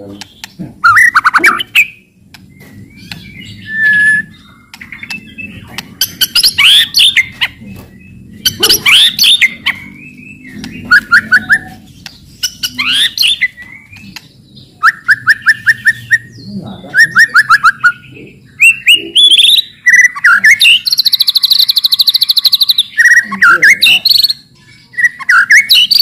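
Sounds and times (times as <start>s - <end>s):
songbird singing with clicks and whistles: 0.0s - 26.0s
quick bird trill: 8.4s - 13.5s.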